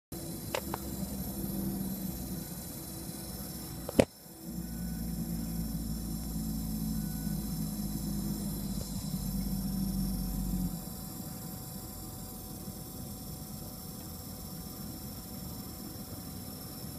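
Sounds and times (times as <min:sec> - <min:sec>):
car hissing and humming: 0:00.3 - 0:11.4
sharp click: 0:03.9 - 0:04.1.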